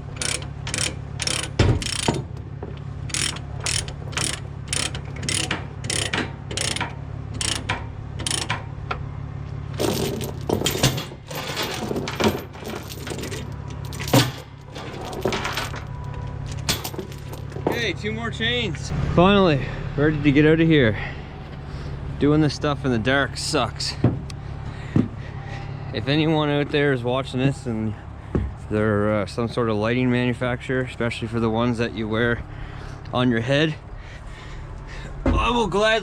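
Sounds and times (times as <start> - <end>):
ratchet pawl clicking: 0.0 - 2.2, 3.1 - 8.6
chain clattering: 0.2 - 2.2, 9.8 - 17.9
truck engine idling: 12.9 - 36.0.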